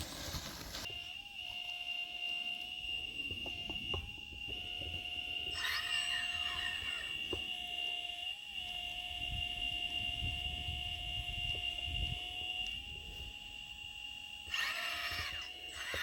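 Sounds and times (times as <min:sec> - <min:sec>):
knocks and scrapes of dirt: 0:00.0 - 0:01.0
hydraulic pump whine: 0:00.0 - 0:16.0
gliding squeals: 0:05.5 - 0:07.3.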